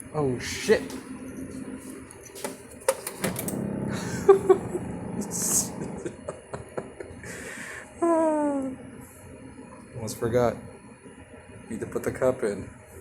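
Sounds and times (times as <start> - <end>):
coffee machine humming: 0.0 - 7.8.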